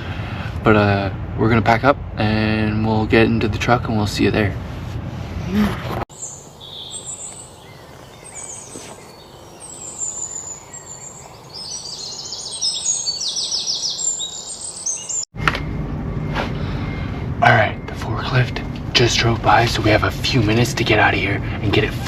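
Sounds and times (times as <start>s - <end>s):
songbirds chirping and singing: 6.1s - 15.3s.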